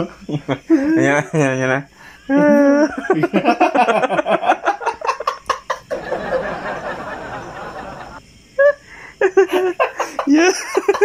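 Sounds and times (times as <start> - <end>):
breathy hissing: 1.8 - 3.5, 4.4 - 11.0
person laughing: 2.3 - 6.6, 8.0 - 11.0.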